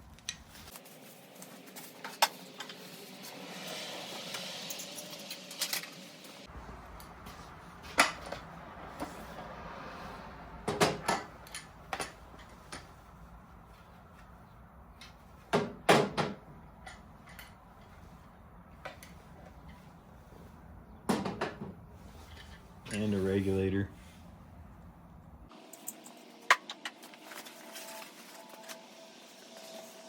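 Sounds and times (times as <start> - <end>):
knocks and clatters of handling: 6.8 - 9.4, 10.6 - 23.2.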